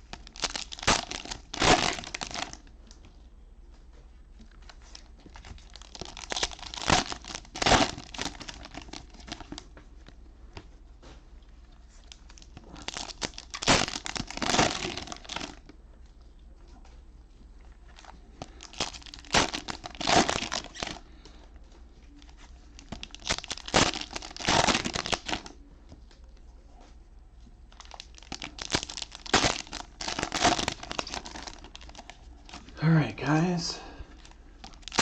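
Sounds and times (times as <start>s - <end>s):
cellophane wrappers crinkling: 0.0s - 2.7s, 4.4s - 10.2s, 11.9s - 16.2s, 17.8s - 21.3s, 22.0s - 25.6s, 27.7s - 32.7s, 34.1s - 35.0s.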